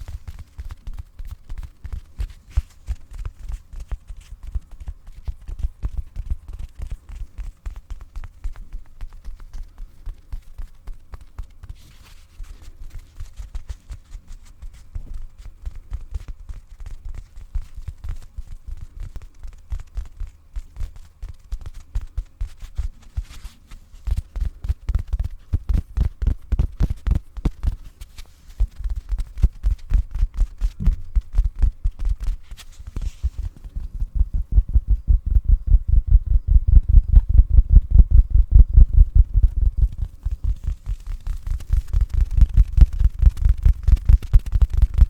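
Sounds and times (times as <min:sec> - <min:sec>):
soft thumps on a pillow: 0:28.6 - 0:35.9.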